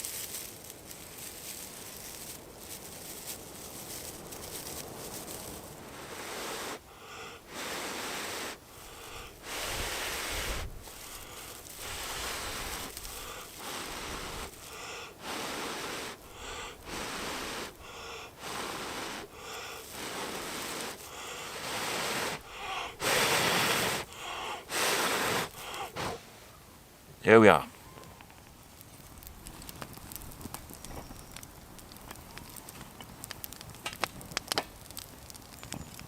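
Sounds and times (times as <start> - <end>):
person blowing on ember: 5.2 - 26.4.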